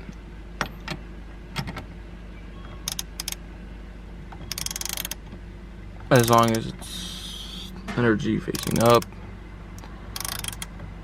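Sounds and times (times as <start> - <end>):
ratchet wrench clicking: 2.9 - 3.4, 4.4 - 5.2, 6.2 - 6.6, 8.5 - 9.1, 9.8 - 10.7.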